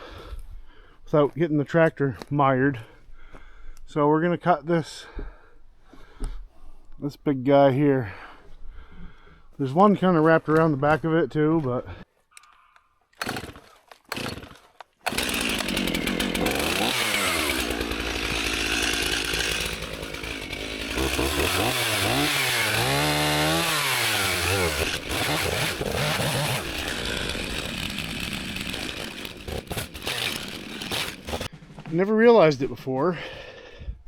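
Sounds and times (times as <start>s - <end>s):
chainsaw cutting wood: 13.2s - 31.5s.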